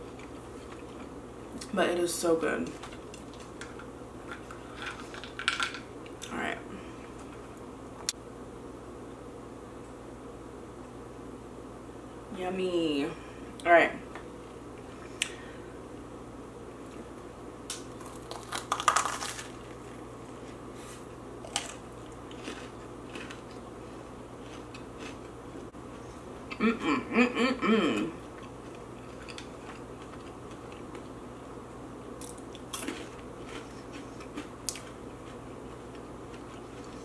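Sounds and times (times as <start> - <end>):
crunching: 17.7 - 20.0, 21.4 - 25.3.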